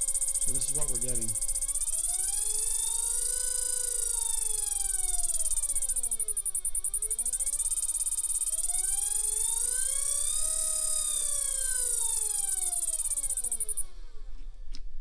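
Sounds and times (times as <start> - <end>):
wavering motor squeak: 0.0 - 14.3
steady high whine: 0.0 - 14.6.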